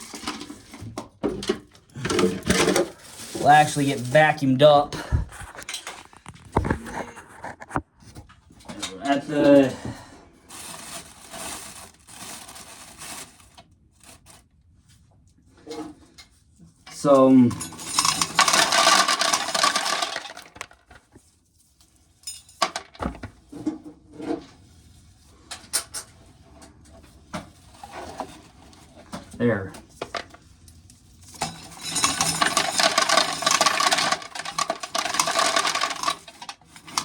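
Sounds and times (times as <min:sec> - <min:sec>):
kernels rattling into a pail: 0:00.0 - 0:04.8, 0:16.9 - 0:21.2, 0:22.2 - 0:23.4, 0:29.9 - 0:30.4, 0:31.2 - 0:37.0.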